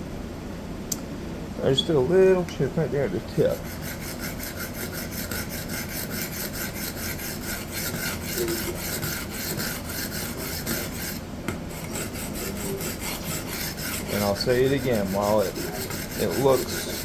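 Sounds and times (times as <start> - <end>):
knife scraping on sharpening plate: 3.5 - 17.0.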